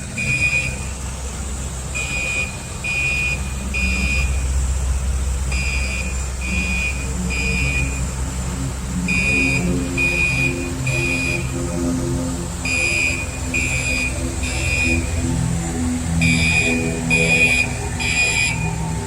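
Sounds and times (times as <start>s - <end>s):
fire alarm beeping: 0.2s - 0.8s, 2.0s - 4.3s, 5.5s - 8.0s, 9.1s - 11.4s, 12.7s - 15.1s, 16.2s - 18.8s.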